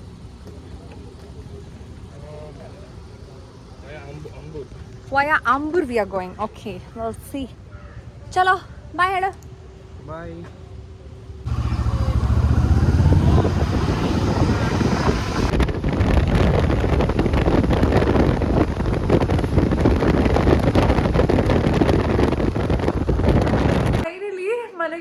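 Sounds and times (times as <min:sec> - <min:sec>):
motorcycle engine drone: 0:09.5 - 0:24.0
wind buffeting microphone: 0:11.5 - 0:24.1.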